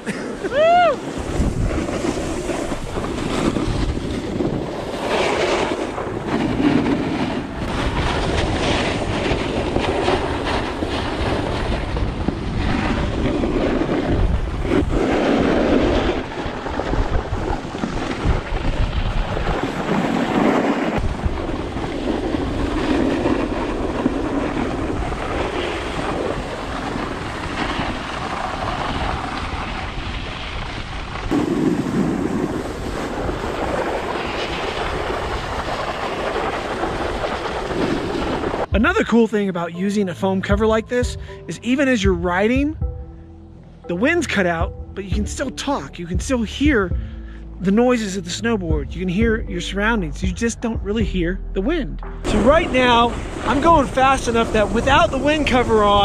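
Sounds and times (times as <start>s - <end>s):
muffled wind rumble: 0.0s - 39.3s, 40.5s - 56.0s
snowboard scraping over snow: 0.0s - 39.3s, 52.3s - 56.0s.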